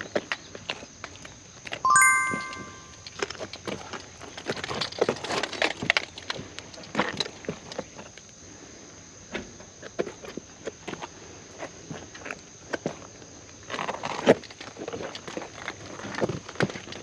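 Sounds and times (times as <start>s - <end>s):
chime ringing: 1.9s - 3.0s.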